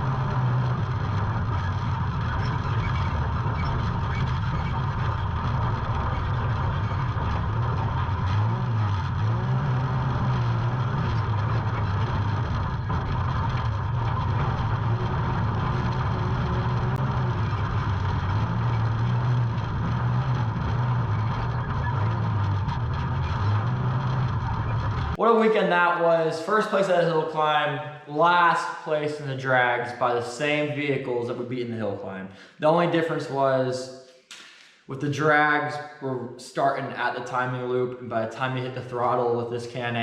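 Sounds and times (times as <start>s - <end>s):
vehicle engine running: 0.0s - 25.2s.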